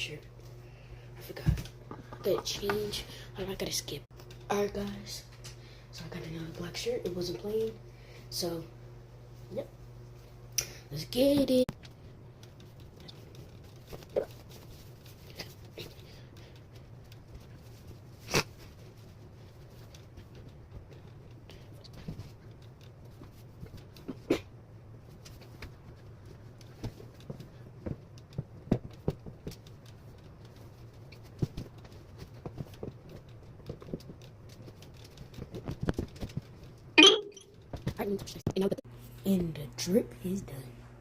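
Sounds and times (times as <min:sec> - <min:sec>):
clothes rustling and clicking: 0:11.2 - 0:38.8.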